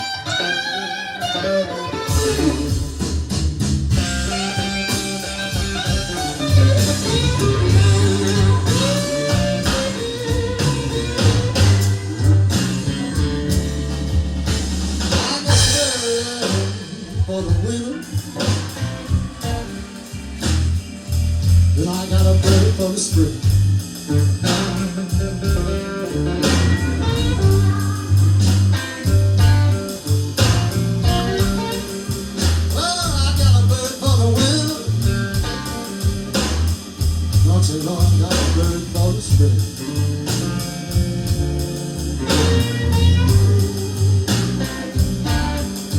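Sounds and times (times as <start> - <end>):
bass and drums: 0.0 - 45.9
electric guitar line: 0.0 - 45.9
person singing: 4.3 - 14.0, 15.1 - 21.1, 24.4 - 29.8, 31.0 - 36.2.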